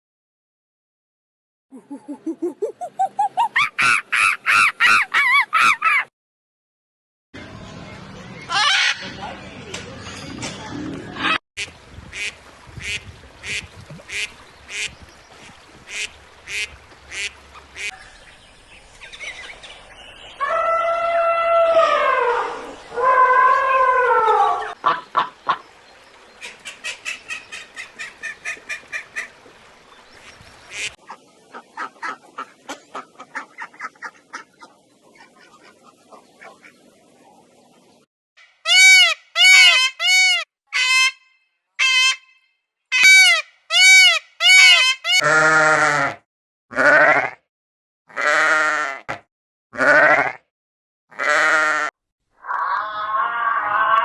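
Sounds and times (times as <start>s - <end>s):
ram bleating: 45.2s - 47.4s, 48.1s - 49.2s, 49.8s - 50.4s, 51.1s - 51.9s.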